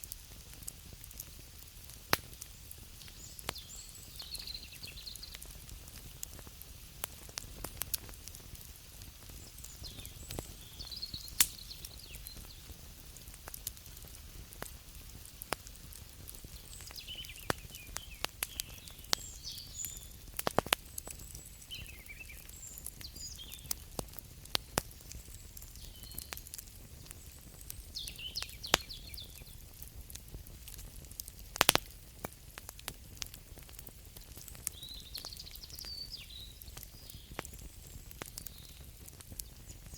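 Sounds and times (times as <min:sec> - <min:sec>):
campfire crackling: 0:00.0 - 0:39.9
faint high chirping calls: 0:03.1 - 0:05.5, 0:09.4 - 0:12.7, 0:16.5 - 0:20.2, 0:21.1 - 0:23.8, 0:25.0 - 0:26.4, 0:27.0 - 0:29.6, 0:34.7 - 0:39.9.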